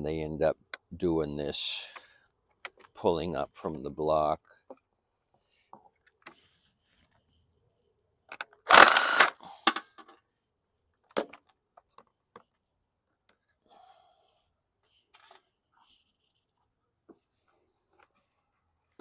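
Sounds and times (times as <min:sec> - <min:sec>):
wrench metal clicks: 0:08.4 - 0:10.0
wrench harsh rasp: 0:08.7 - 0:09.4.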